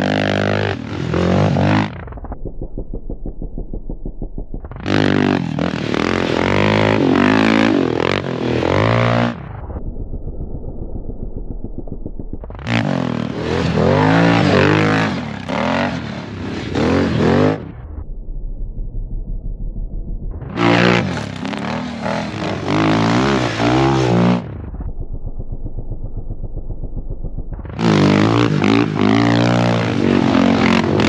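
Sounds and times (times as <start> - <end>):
quad engine revving: 0.0 - 2.0, 4.7 - 9.5, 12.6 - 17.7, 20.5 - 24.6, 27.6 - 31.0.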